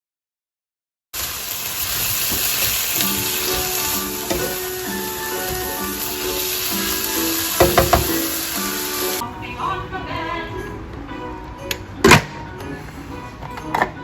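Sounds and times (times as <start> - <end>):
food sizzling in a pan: 1.2 - 9.2
light background music: 2.4 - 14.0
sharp knocks: 7.6 - 8.2.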